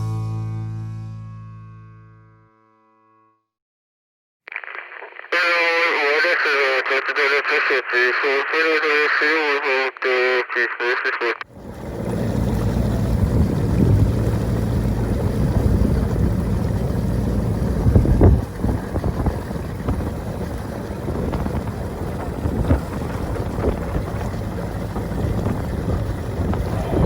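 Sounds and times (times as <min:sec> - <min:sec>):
motorboat engine drone: 0:11.5 - 0:27.0
wind on microphone: 0:13.1 - 0:14.4, 0:17.6 - 0:27.0.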